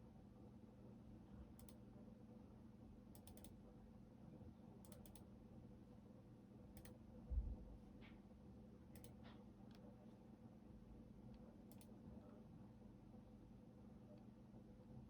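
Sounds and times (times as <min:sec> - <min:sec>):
computer keyboard keystrokes: 0:03.2 - 0:03.6, 0:04.9 - 0:05.3, 0:09.0 - 0:09.2.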